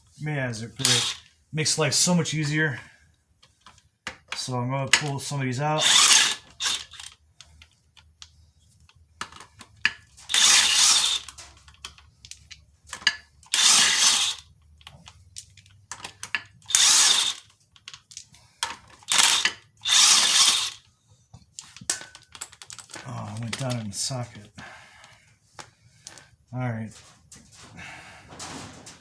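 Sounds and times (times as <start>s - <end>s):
impact wrench bursts: 0.8s - 1.3s, 5.8s - 7.2s, 10.3s - 11.4s, 13.5s - 14.5s, 16.6s - 17.5s, 19.0s - 20.8s.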